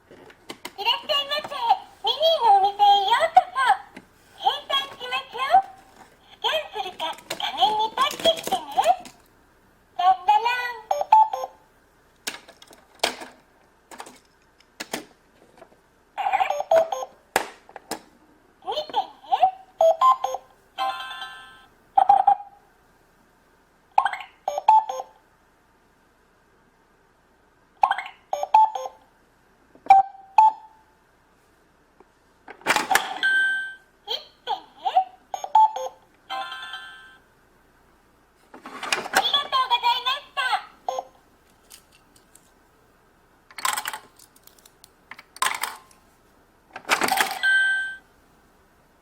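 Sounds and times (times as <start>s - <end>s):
toy cash register beeps and jingles: 6.7s - 9.0s, 10.9s - 11.6s, 16.2s - 17.2s, 19.8s - 22.5s, 24.5s - 25.1s, 28.1s - 29.0s, 32.9s - 33.8s, 35.4s - 37.2s, 40.9s - 41.1s, 47.0s - 48.0s.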